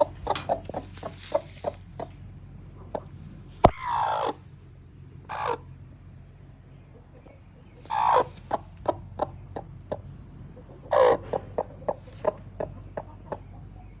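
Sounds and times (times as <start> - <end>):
hen clucking: 0.0 - 14.0
hen squawking: 2.9 - 4.5, 5.3 - 5.7, 7.8 - 9.8, 10.8 - 13.4.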